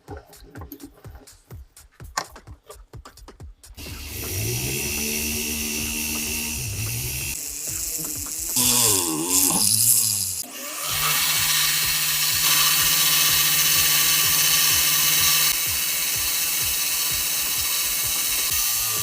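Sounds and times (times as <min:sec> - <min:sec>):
power tool running: 0:03.8 - 0:19.0.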